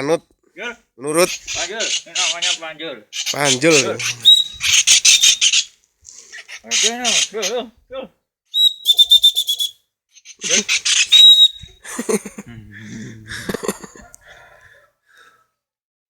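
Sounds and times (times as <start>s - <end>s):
kingfisher calling: 1.2s - 7.7s, 8.6s - 11.8s.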